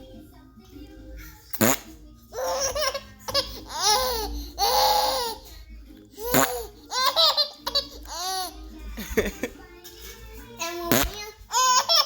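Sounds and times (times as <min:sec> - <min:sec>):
baby laughing and squealing: 0:02.4 - 0:05.5, 0:06.2 - 0:08.6, 0:10.9 - 0:12.0.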